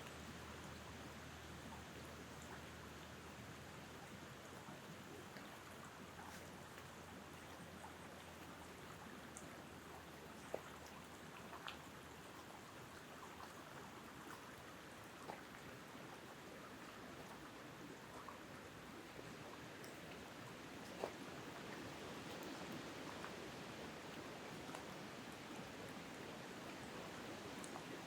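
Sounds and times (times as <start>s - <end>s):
wind blowing through tree tops: 11.1s - 28.0s.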